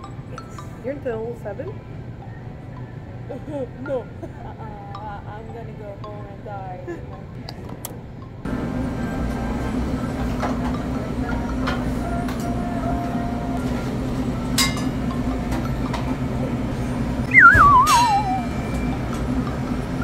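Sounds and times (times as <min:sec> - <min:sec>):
wavering whine falling in pitch: 0:17.3 - 0:19.2.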